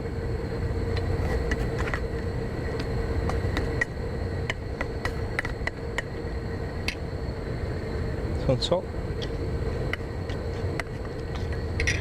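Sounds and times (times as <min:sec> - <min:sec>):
low machine rumble: 0:00.0 - 0:12.0.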